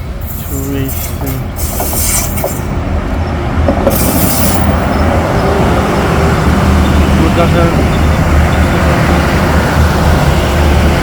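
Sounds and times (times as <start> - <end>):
high wheel squeal: 0.0 - 2.8, 3.9 - 5.6
diesel train rumble: 0.0 - 11.0.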